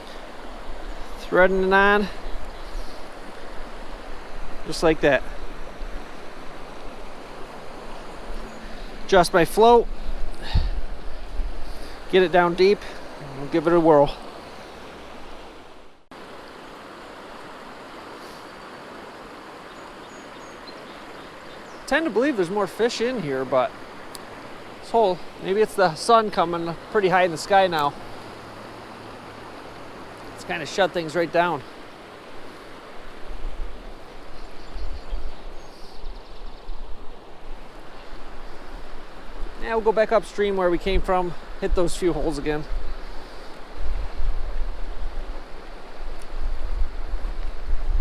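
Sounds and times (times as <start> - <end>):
stream rushing over rocks: 0.0 - 48.0
wind buffeting microphone: 2.2 - 14.4, 40.8 - 48.0.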